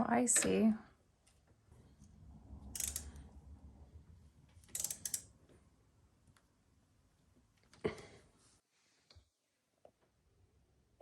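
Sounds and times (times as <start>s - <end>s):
metallic clicking and rattling: 2.7s - 3.3s, 4.6s - 5.3s.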